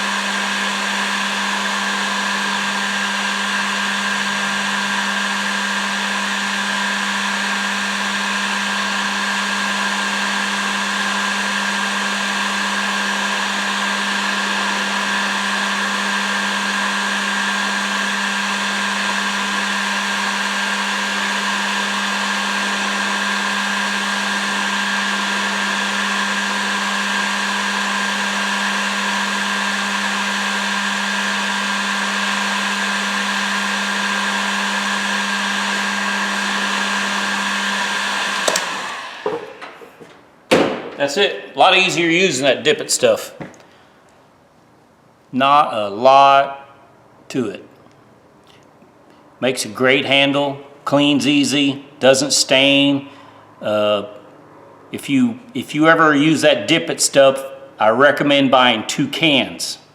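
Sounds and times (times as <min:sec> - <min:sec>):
heat gun blowing air: 0:00.0 - 0:44.1.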